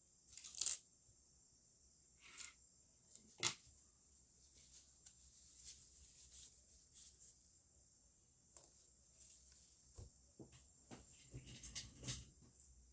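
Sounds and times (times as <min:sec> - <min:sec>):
paper and plant rustling: 0:04.4 - 0:07.5.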